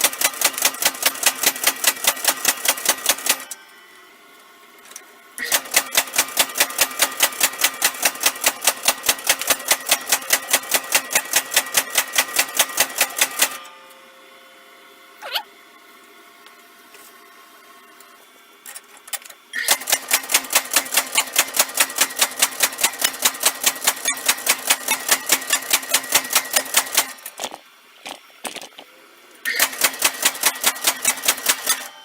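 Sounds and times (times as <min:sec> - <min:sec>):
power hammer striking: 0:00.1 - 0:03.6, 0:05.4 - 0:13.9, 0:19.6 - 0:27.5.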